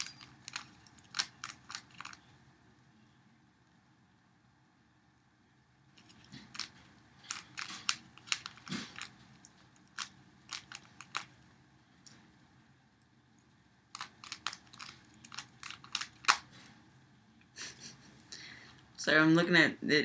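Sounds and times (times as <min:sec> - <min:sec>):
puzzle cube plastic clicks: 0:00.0 - 0:02.3, 0:06.0 - 0:11.4, 0:13.9 - 0:16.6.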